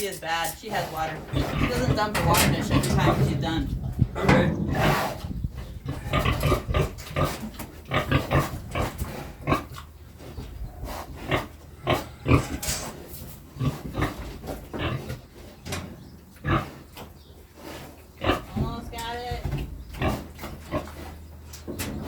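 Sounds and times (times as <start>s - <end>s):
pig grunting: 0.7s - 15.6s, 16.4s - 16.9s.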